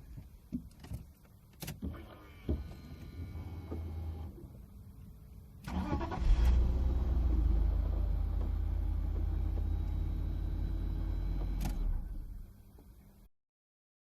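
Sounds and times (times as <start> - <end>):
car engine droning: 5.7 - 12.6.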